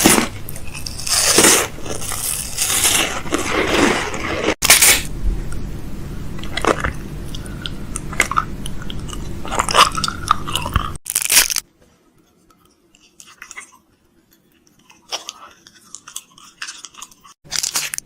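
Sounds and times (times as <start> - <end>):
low hum: 4.6 - 11.0
crunching and clicking: 14.8 - 18.0.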